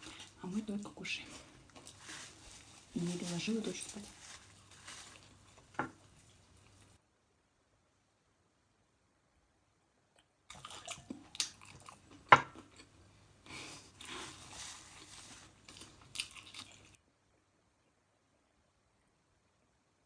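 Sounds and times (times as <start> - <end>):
chewing crunchy fried food: 0.0 - 2.9, 4.3 - 7.0, 10.5 - 17.0.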